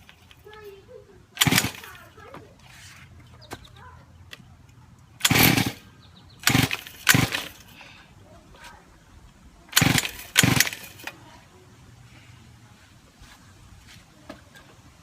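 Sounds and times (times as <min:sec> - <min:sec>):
engine recoil starter pulls: 0:01.4 - 0:03.4, 0:05.2 - 0:07.8, 0:09.7 - 0:11.2.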